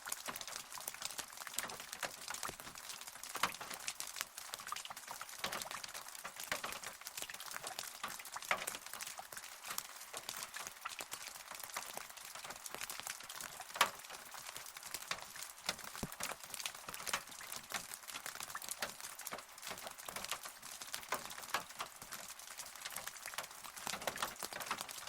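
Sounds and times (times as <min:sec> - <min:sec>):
hiss of rainfall: 0:00.0 - 0:25.0
raindrops ticking on a surface: 0:00.0 - 0:25.0.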